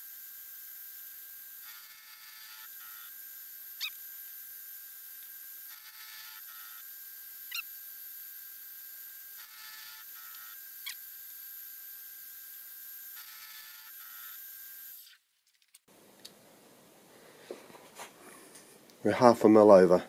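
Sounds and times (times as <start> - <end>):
sharp squeak: 7.5 - 7.7.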